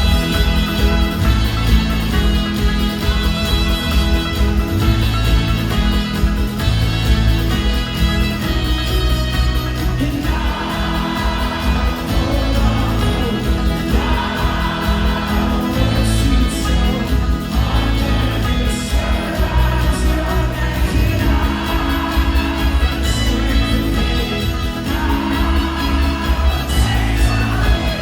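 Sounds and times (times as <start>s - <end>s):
folk-rock band playing: 0.0s - 28.0s
wordless voices singing: 9.6s - 28.0s.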